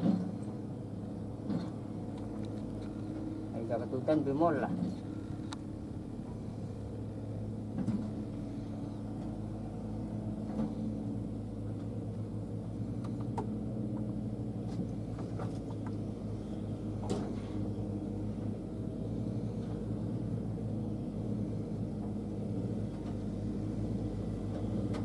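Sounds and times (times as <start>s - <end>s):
diesel engine running: 0.0s - 25.0s
faint knocks and clanks: 17.0s - 17.6s.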